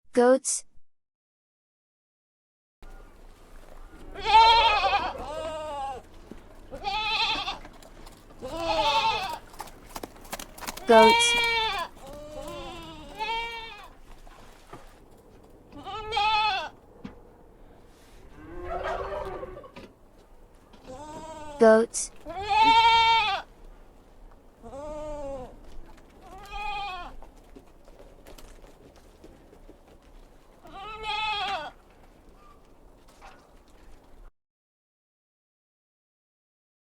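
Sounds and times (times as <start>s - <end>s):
goats bleating: 4.0s - 7.8s, 8.4s - 9.5s, 10.8s - 14.0s, 15.7s - 16.8s, 20.8s - 23.5s, 24.6s - 25.6s, 26.2s - 27.2s, 30.6s - 31.8s.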